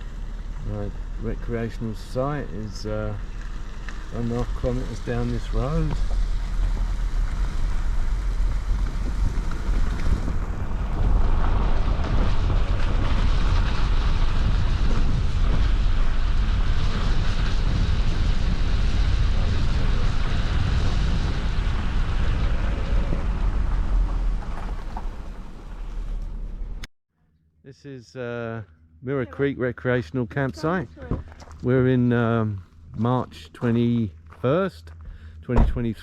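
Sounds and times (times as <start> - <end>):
tyres rumbling on rough road: 0.0 - 26.9
wind noise: 1.8 - 26.9.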